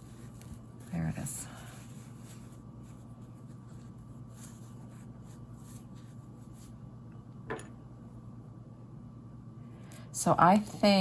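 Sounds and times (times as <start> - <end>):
fabric rustling: 0.0 - 6.8
low electrical hum: 0.0 - 11.0.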